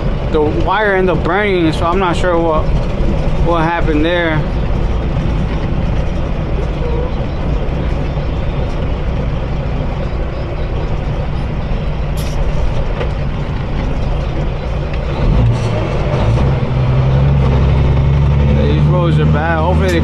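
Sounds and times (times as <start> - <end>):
road noise: 0.0 - 20.0
truck diesel engine running: 0.0 - 20.0
sharp click: 12.2 - 12.4.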